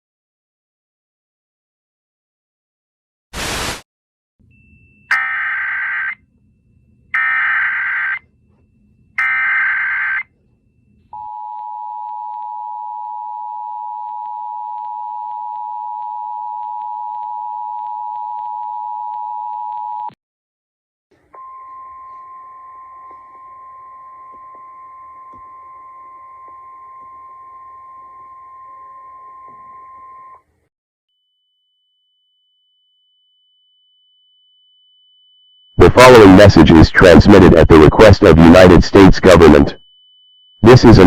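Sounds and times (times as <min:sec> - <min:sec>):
two-tone attention signal: 0:04.5 - 0:06.2, 0:35.6 - 0:41.0
warbling data tones: 0:05.1 - 0:06.2.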